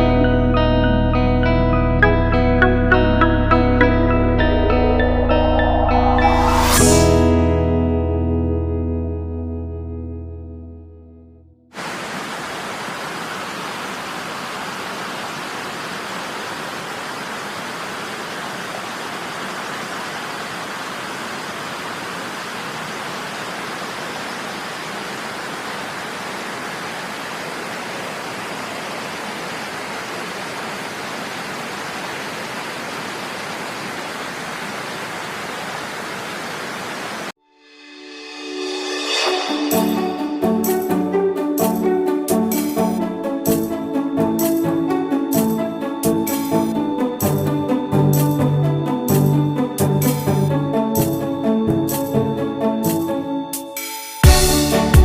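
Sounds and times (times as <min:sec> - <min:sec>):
background music: 0:00.0 - 0:11.4, 0:37.5 - 0:55.0
waterfall rushing: 0:11.8 - 0:37.4.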